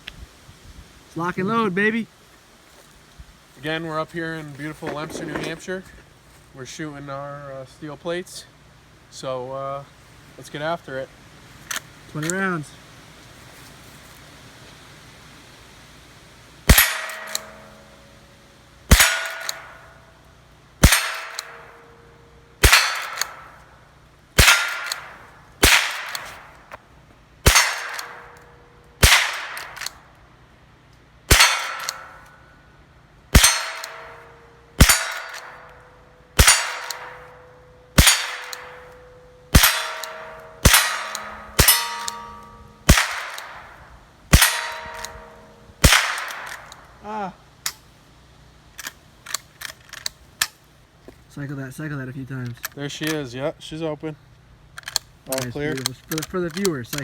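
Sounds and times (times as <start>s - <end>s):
rifle shots: 16.7s - 18.0s, 18.9s - 20.0s, 20.8s - 22.0s, 22.6s - 23.7s, 24.4s - 26.6s, 27.4s - 30.0s, 31.3s - 32.4s, 33.3s - 46.9s
steel target plate clanging: 16.7s - 20.1s, 20.8s - 23.7s, 24.4s - 26.6s, 27.4s - 30.0s, 31.3s - 32.4s, 33.3s - 46.8s.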